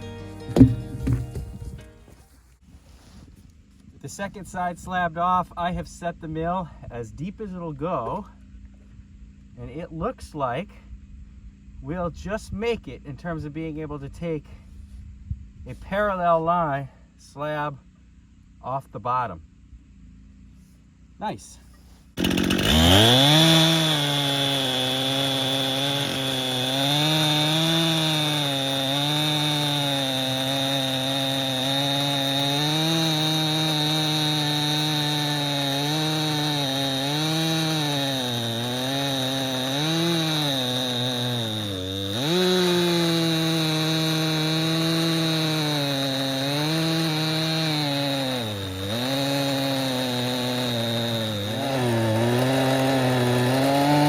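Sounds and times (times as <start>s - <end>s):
chainsaw ripping through log: 0.5s - 1.8s, 22.0s - 54.0s.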